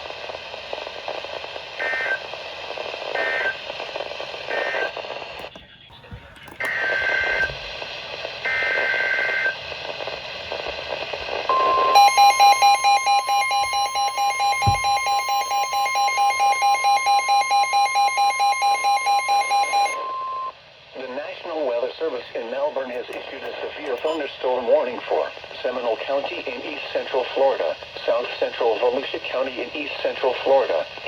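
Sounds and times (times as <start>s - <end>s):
radio receiver hissing: 0.0s - 16.8s, 21.0s - 31.0s
steady warning alarm tone: 11.5s - 20.5s.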